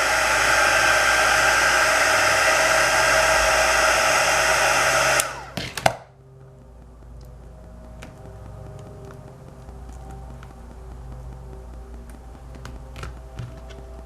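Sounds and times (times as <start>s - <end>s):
clicks: 0.0s - 14.0s
heat gun blowing with fan whine: 0.0s - 14.0s.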